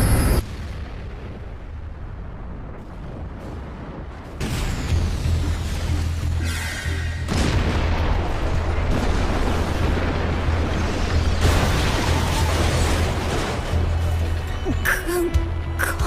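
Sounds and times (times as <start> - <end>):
loud explosion with deep rumble: 0.3 - 6.4, 7.2 - 14.4
music: 4.8 - 8.1, 12.0 - 16.0.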